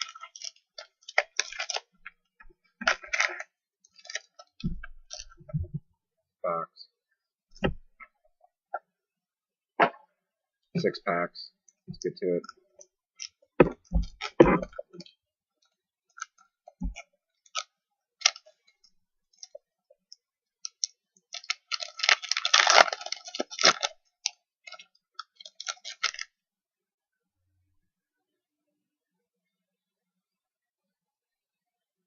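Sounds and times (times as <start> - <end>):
foil wrapper crinkling: 0.0 - 1.9, 2.8 - 5.4, 16.2 - 18.6, 20.6 - 26.3
knocks and thuds: 7.6 - 8.0.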